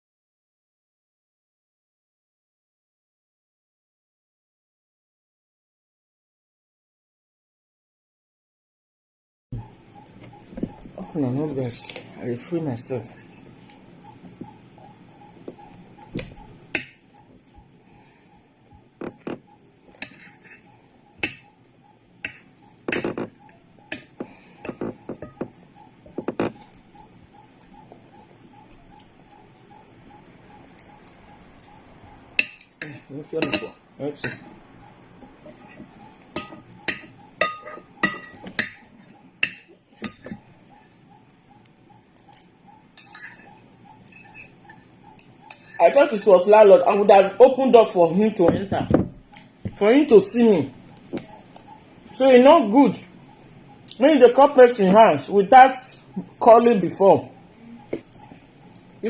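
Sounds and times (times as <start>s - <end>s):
faint steady ticking: 9.6s - 45.8s
cutlery clinking against a plate: 20.0s - 21.5s, 32.4s - 34.6s, 35.5s - 40.4s, 42.3s - 45.9s
cutlery knocking against a dish: 22.3s - 26.5s.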